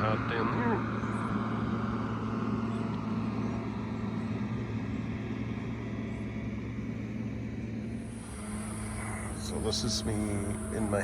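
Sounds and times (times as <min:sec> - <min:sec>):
diesel engine low drone: 0:00.0 - 0:11.0.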